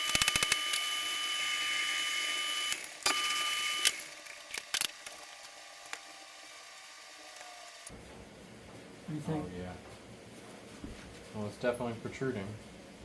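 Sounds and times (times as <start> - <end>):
motorized shop tool whining: 0.0 - 7.9.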